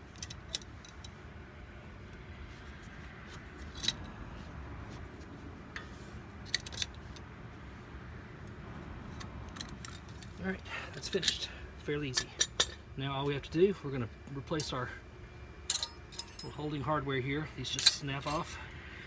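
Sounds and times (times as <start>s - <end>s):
low steady hum: 0.0s - 19.0s
metallic clicks of clamp turning: 6.5s - 7.3s, 9.2s - 10.4s.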